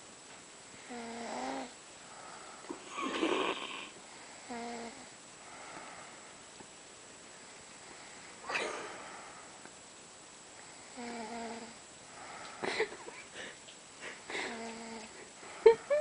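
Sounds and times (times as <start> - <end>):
noisy breath: 2.0 - 4.6, 5.4 - 6.5, 7.2 - 9.7, 12.1 - 16.0
short pitched snores: 2.8 - 5.0.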